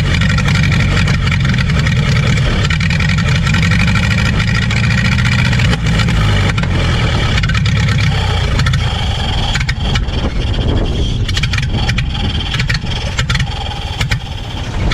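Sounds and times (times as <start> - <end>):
sharp clicks and knocks: 0.0 - 10.4
engine low rumble: 0.0 - 14.9.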